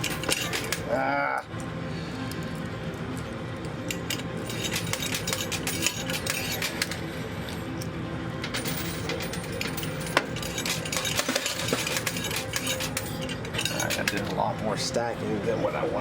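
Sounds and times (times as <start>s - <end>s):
coins clinking and dropping: 0.0s - 0.9s, 3.7s - 14.4s.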